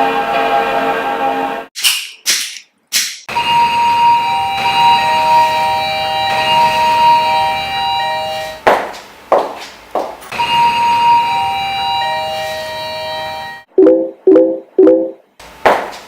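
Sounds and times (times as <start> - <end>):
sharp knocks: 8.7 - 10.2, 15.7 - 16.0.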